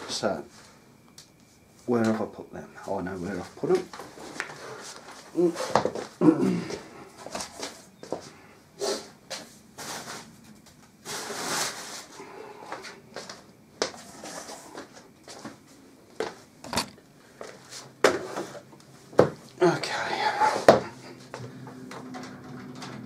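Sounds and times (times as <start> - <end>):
clicks and knocks of computer parts: 16.6 - 17.0.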